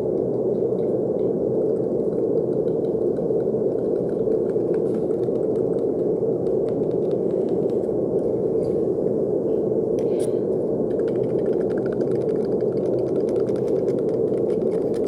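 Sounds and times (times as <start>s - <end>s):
brown noise hiss: 0.0s - 15.0s.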